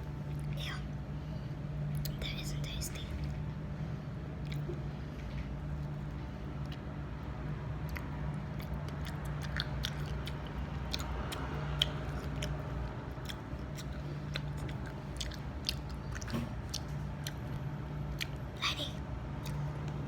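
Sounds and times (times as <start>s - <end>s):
steady low hum: 0.0s - 20.0s
person chewing crunchy food: 4.2s - 18.5s, 19.4s - 20.0s.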